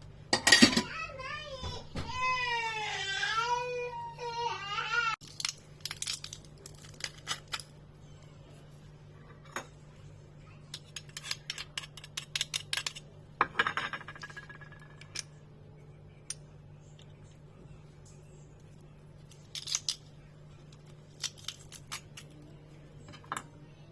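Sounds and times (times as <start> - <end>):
kitchen utensils and dishes clicking: 0.4 - 0.9, 10.7 - 15.3.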